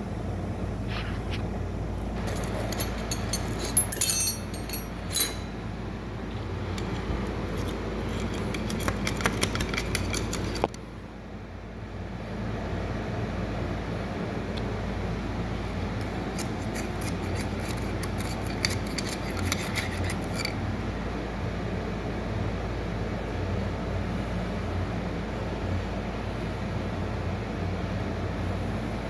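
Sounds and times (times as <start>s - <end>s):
steady low hum: 0.0s - 29.0s
metal parts clinking and rattling: 2.1s - 10.7s, 16.4s - 20.6s.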